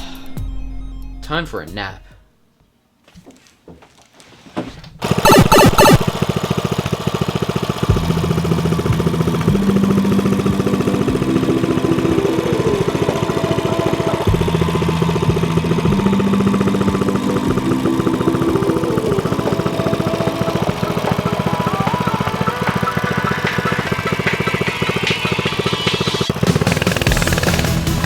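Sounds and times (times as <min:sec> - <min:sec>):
electronic music with buzzing pulse: 0:05.2 - 0:06.2, 0:09.5 - 0:28.0.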